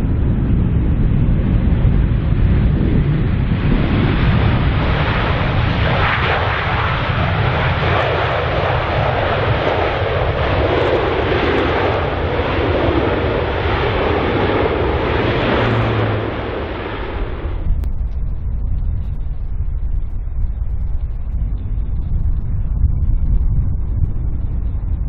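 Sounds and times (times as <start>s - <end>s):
jet engines rushing: 0.0s - 25.0s.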